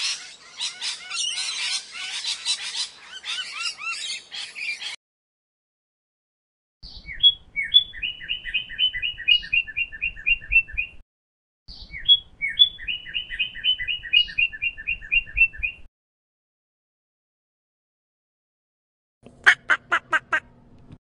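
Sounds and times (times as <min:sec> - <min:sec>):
songbird singing: 0:06.8 - 0:11.0, 0:11.7 - 0:15.9.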